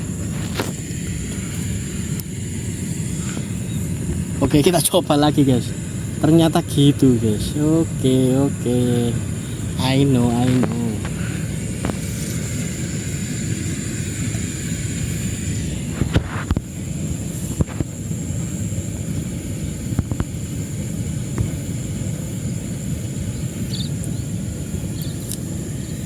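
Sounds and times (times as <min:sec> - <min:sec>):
high steady whine: 0:00.0 - 0:26.0
low rumbling outdoor noise: 0:00.0 - 0:26.0.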